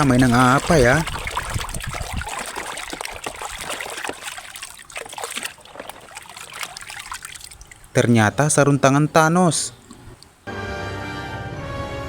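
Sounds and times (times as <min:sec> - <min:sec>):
small drips and knocks: 0:00.0 - 0:08.0
water trickling and splashing: 0:00.0 - 0:08.6, 0:09.7 - 0:10.4.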